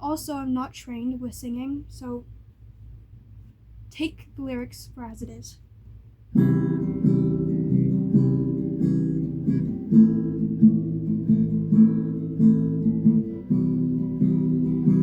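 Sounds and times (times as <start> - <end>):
guitar strumming chords: 6.3 - 15.0.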